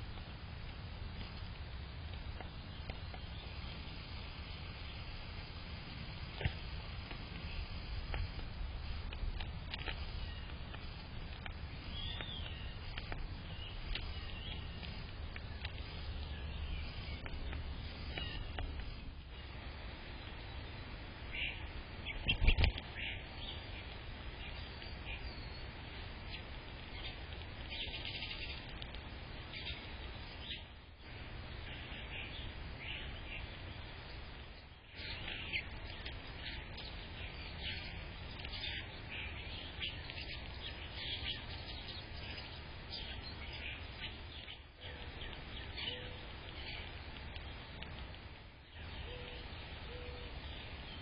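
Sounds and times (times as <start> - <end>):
small birds chirping: 0.0 - 51.0.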